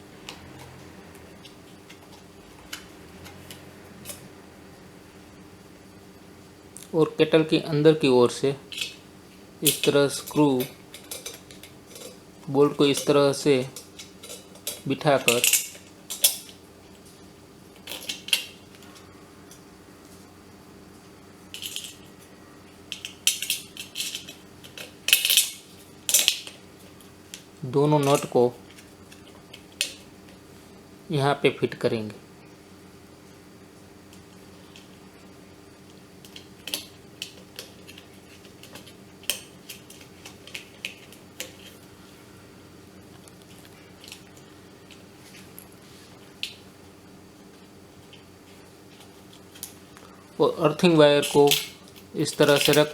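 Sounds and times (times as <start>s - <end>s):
faint steady hum: 0.0s - 52.9s
small metal parts clinking and scraping: 9.6s - 12.2s, 12.9s - 16.6s, 17.8s - 18.6s, 21.6s - 22.1s, 22.9s - 26.6s, 51.2s - 52.9s.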